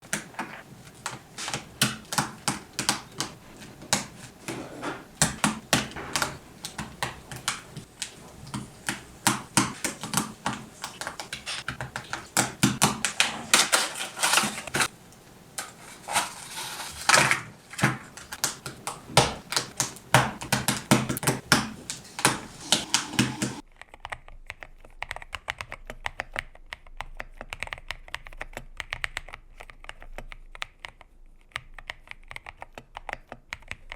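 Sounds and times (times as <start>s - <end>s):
mechanical keyboard typing: 18.2s - 33.9s.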